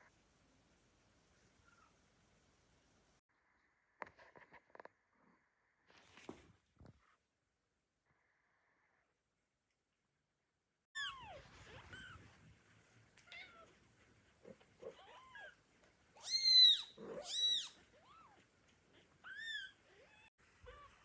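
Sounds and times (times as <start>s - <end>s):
kittens mewing: 14.4s - 15.6s, 16.2s - 21.0s.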